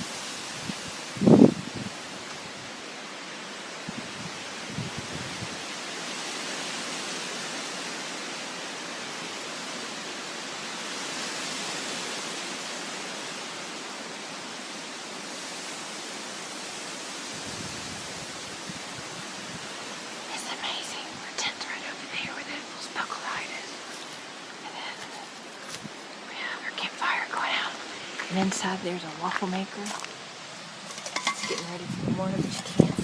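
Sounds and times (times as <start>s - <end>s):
wind blowing through trees: 0.0s - 33.0s.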